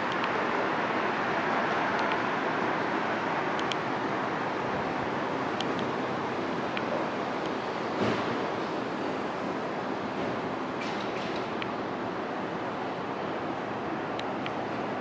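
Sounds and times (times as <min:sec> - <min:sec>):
jet engines on takeoff: 0:00.0 - 0:15.0.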